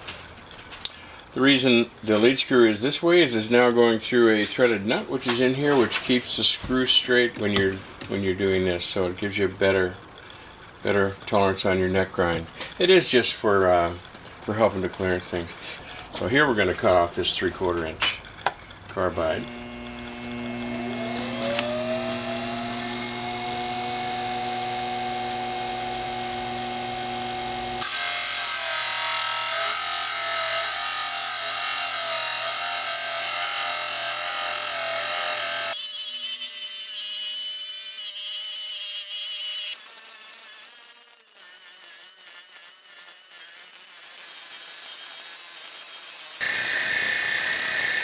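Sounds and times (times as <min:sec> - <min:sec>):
bench grinder whining: 0:18.9 - 0:35.8, 0:43.3 - 0:48.0
high grinding hiss on metal: 0:46.4 - 0:48.0.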